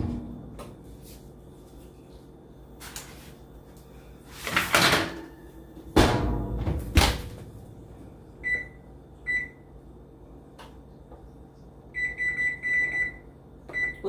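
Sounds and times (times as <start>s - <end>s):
oven door shutting: 0.0s - 0.8s, 4.5s - 7.6s
oven control panel beeps: 8.4s - 9.6s, 12.0s - 14.0s.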